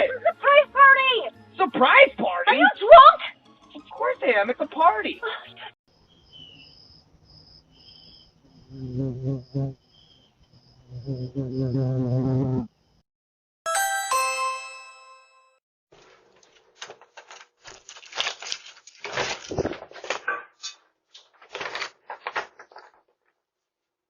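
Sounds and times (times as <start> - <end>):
doorbell chime: 13.7 - 15.6.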